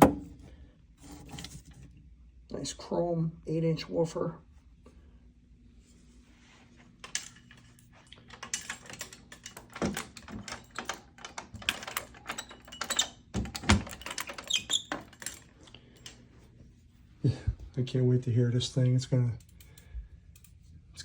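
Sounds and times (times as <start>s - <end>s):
hard parts clicking and clattering: 7.0s - 16.2s.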